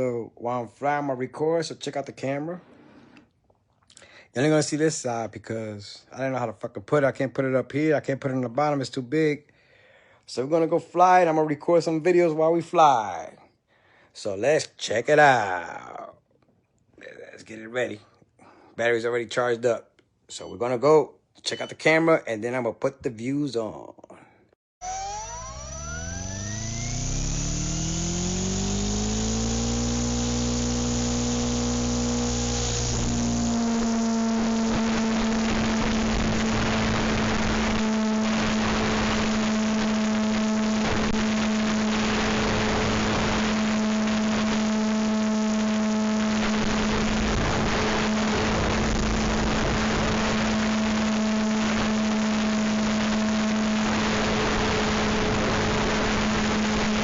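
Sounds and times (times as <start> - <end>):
rushing rotor noise: 24.8 - 36.1
rc helicopter motor whine: 24.8 - 57.0.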